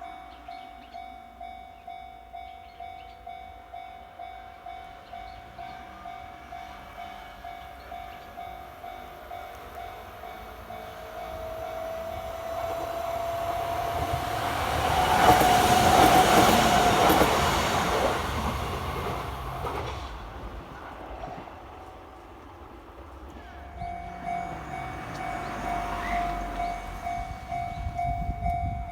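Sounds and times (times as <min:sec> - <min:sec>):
train passing: 0:00.0 - 0:28.9
level crossing bell ringing: 0:23.5 - 0:28.9.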